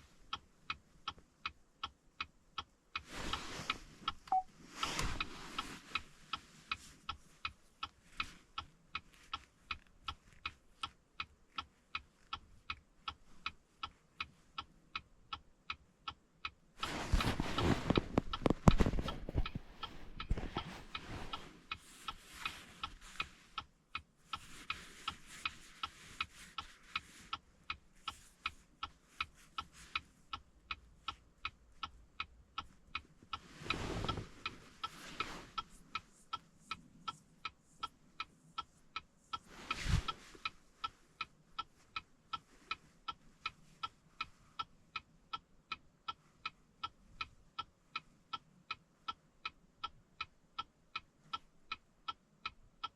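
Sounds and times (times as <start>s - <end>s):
electronic ticking: 0.0s - 5.3s
rustling handling noise: 3.0s - 12.6s, 16.8s - 23.6s, 24.2s - 30.3s, 32.6s - 41.2s.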